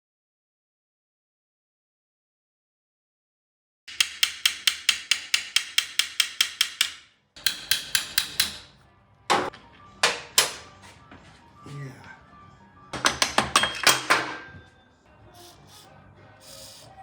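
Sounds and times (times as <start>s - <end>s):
hammer tapping on metal: 3.9s - 10.6s.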